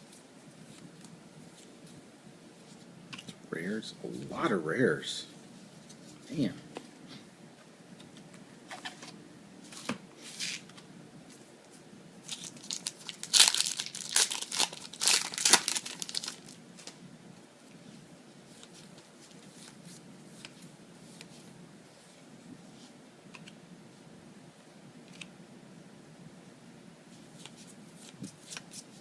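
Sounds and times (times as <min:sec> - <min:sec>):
foil wrapper tearing and crinkling: 0:12.3 - 0:16.6.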